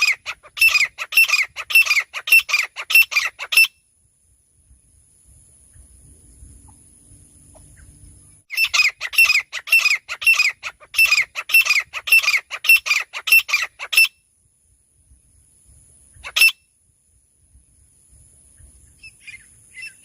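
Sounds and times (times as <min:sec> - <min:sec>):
bird calling: 0:00.0 - 0:03.8, 0:07.4 - 0:14.2, 0:16.1 - 0:16.7, 0:18.5 - 0:20.0.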